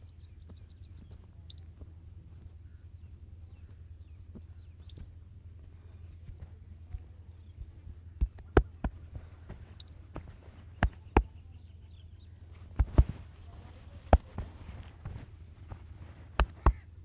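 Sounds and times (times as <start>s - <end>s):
low steady hum: 0.0s - 17.0s
sharp hand slaps: 16.4s - 16.8s.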